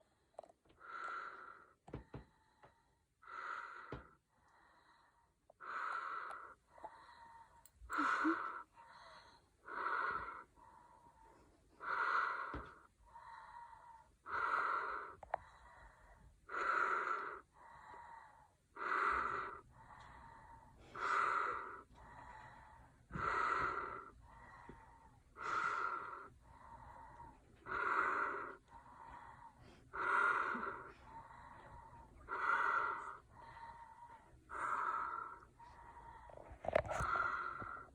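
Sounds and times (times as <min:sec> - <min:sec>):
soft breath: 0:00.0 - 0:37.9
woman snoring loudly: 0:08.0 - 0:08.7.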